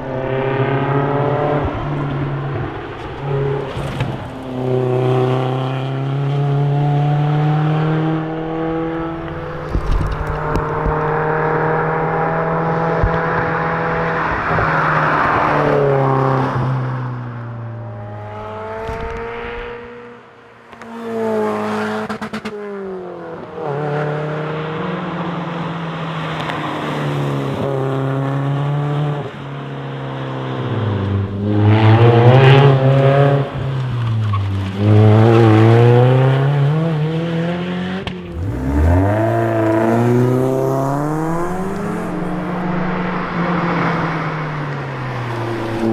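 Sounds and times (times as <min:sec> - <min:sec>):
car engine revving hard: 0:00.1 - 0:16.4, 0:34.6 - 0:45.9.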